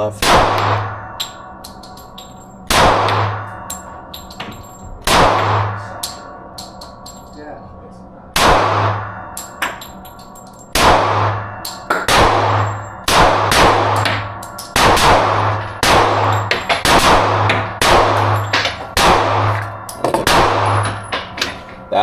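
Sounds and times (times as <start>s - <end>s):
pistol shots echoing indoors: 0.2s - 7.2s, 8.3s - 21.6s
light clinks: 6.0s - 7.5s.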